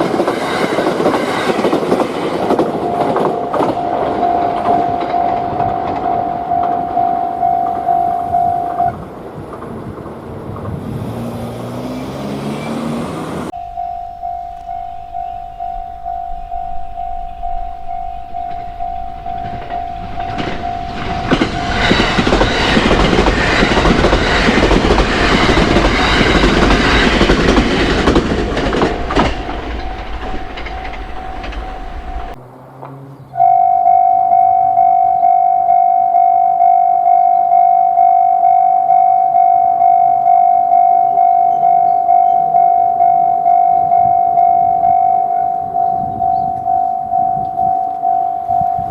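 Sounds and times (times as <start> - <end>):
level-crossing warning bell: 0.0 - 9.2, 13.5 - 32.4, 33.4 - 48.9
train rumble and wheel clatter: 0.0 - 33.0.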